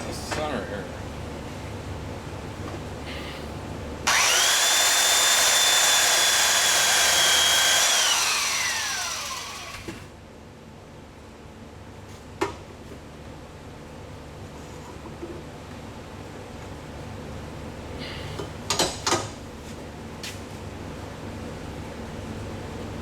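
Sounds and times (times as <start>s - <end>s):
power sanding tool whining: 4.1s - 10.1s.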